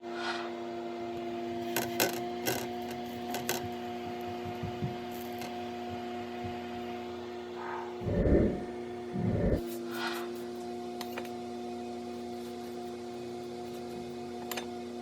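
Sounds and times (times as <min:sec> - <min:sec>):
steady tonal hum: 0:07.0 - 0:13.0.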